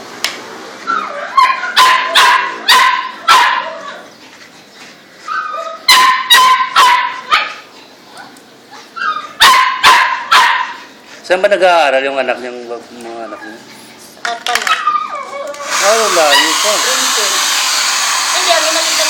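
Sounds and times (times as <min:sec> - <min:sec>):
small dog yapping: 0:00.8 - 0:04.1, 0:05.2 - 0:10.9, 0:14.6 - 0:16.6.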